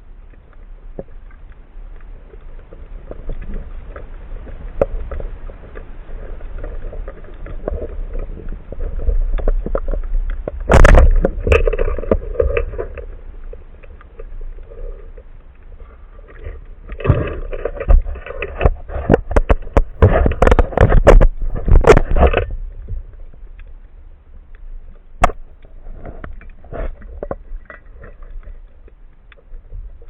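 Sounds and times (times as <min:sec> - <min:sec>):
water splashing: 0:00.0 - 0:23.8
low underwater rumble: 0:00.0 - 0:30.0
underwater clicks: 0:00.2 - 0:30.0.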